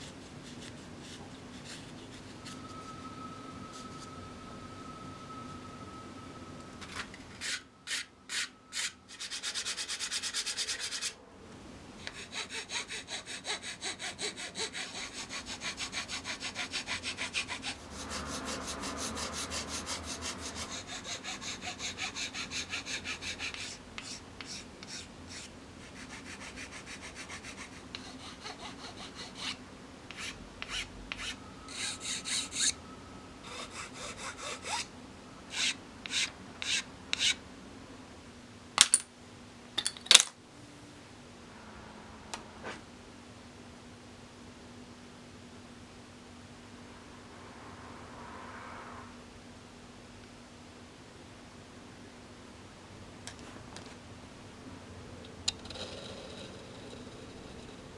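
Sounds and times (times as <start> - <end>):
hand tool strokes on wood: 12.1 - 32.8, 33.4 - 34.9.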